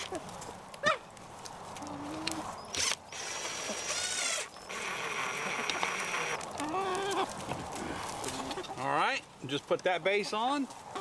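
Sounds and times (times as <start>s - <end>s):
cordless drill driving screws: 2.7s - 6.4s
chicken clucking: 5.2s - 8.9s.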